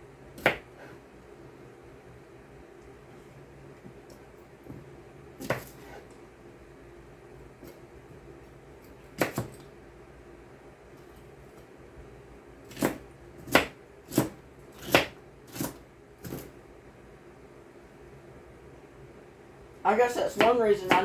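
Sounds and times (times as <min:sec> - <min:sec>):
knife chopping on cutting board: 0:00.4 - 0:01.0, 0:05.4 - 0:06.0, 0:09.1 - 0:09.6, 0:12.7 - 0:16.5, 0:20.4 - 0:21.0.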